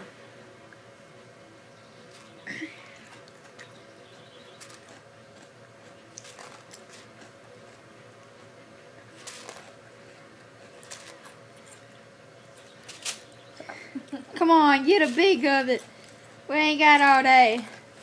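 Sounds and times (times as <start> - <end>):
steady hum: 0.0 - 18.0
cereal crunched by mouth: 4.6 - 7.8, 9.2 - 9.8.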